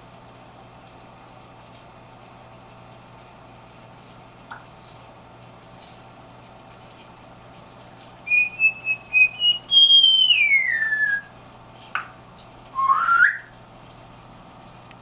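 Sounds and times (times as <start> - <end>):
parrot whistling: 8.2 - 11.4, 12.8 - 13.6.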